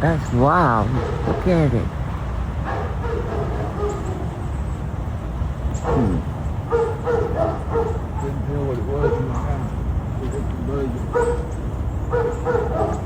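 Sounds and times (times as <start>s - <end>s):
dog yipping: 2.7s - 4.4s, 5.8s - 9.7s, 11.0s - 13.0s
dog whining: 5.8s - 8.4s.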